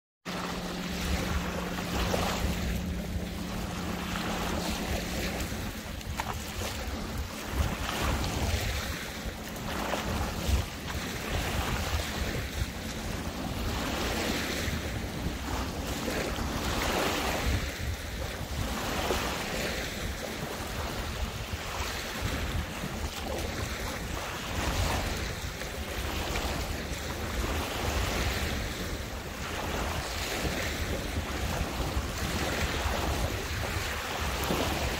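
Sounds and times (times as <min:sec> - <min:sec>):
small waves lapping: 0:00.2 - 0:34.9
low steady hum: 0:00.3 - 0:18.8
wind buffeting microphone: 0:00.3 - 0:34.9.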